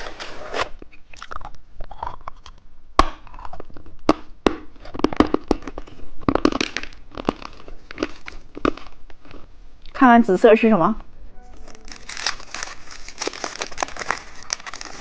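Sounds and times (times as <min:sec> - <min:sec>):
candy crunching: 0:01.0 - 0:10.0, 0:11.6 - 0:15.0
plastic packaging crinkling: 0:11.6 - 0:15.0.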